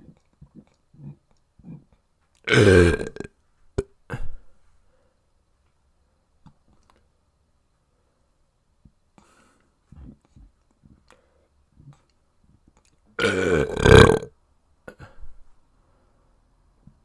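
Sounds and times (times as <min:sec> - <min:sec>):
person burping: 0:02.4 - 0:04.4, 0:13.2 - 0:14.3.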